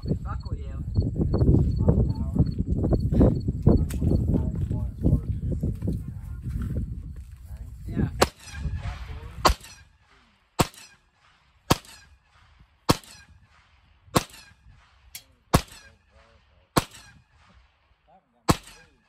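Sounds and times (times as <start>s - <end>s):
gunshots with echo: 8.2s - 19.0s.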